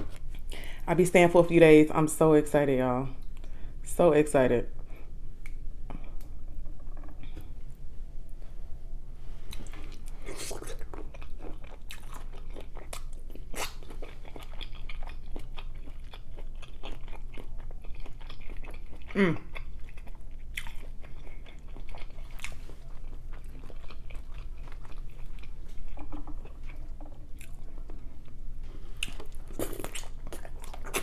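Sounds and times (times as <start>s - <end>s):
person chewing food: 9.5s - 31.0s.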